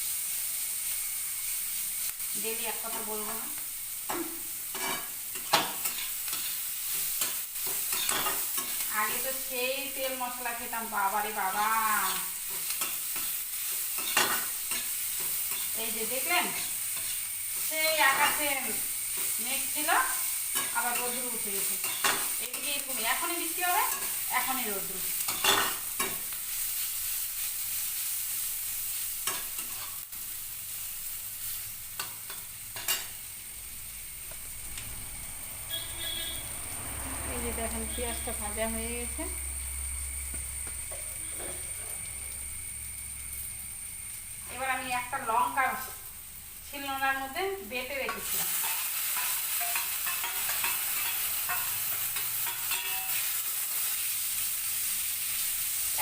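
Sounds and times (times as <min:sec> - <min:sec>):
onion sizzling in hot oil: 0:00.0 - 0:56.0
spoon scraping a pan: 0:04.1 - 0:08.9, 0:12.0 - 0:15.8, 0:20.6 - 0:22.9, 0:25.2 - 0:26.3, 0:40.9 - 0:42.0, 0:48.1 - 0:53.9
spatula scraping a pan: 0:04.7 - 0:08.9, 0:48.3 - 0:53.4.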